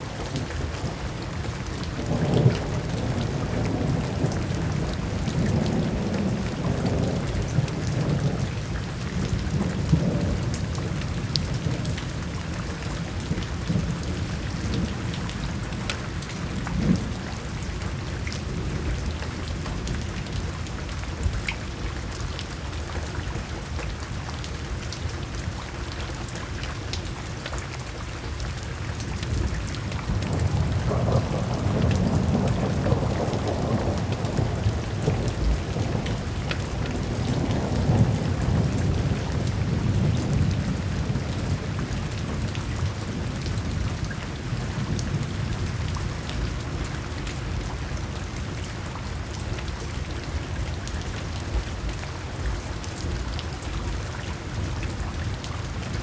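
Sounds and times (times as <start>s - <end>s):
steady rain falling: 0.0s - 56.0s
rolling thunder: 0.3s - 19.0s, 29.3s - 46.4s.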